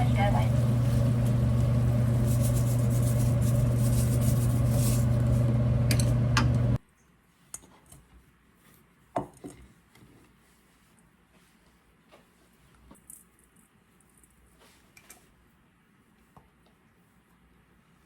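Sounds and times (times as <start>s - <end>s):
loud mechanical hum: 0.0s - 6.8s.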